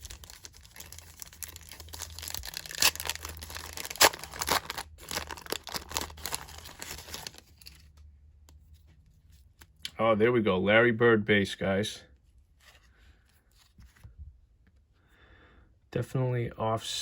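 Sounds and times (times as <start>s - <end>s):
wrapper tearing and crinkling: 0.0s - 7.8s.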